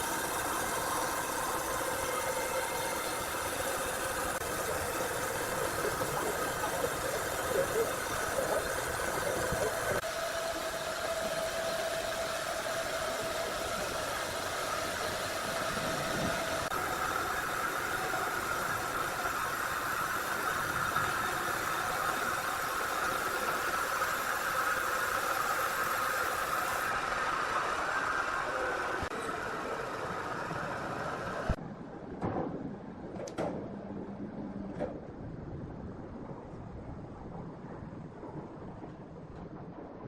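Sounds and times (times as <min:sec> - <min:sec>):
sawmill machinery whining: 0:00.0 - 0:31.6.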